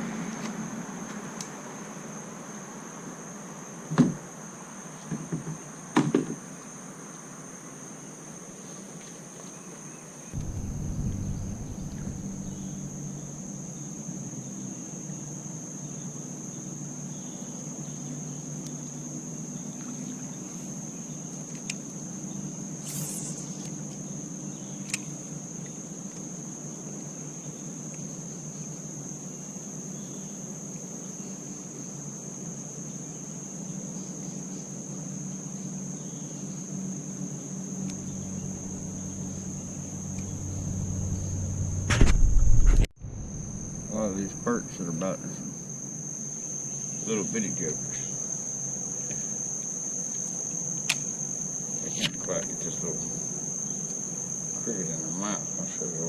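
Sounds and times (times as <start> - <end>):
high-pitched insect chorus: 0.0 - 56.0
low steady hum: 10.4 - 14.4, 37.6 - 45.7
brief hiss: 22.8 - 23.6.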